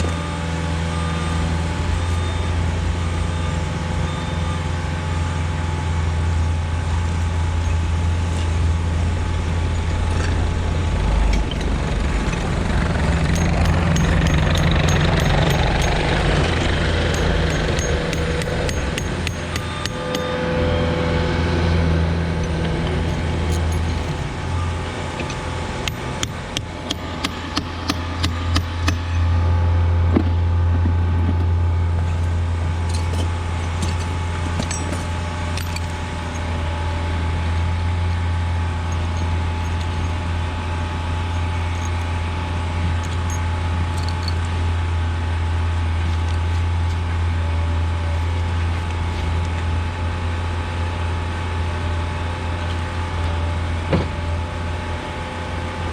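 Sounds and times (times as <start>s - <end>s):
machine humming: 8.6s - 29.1s.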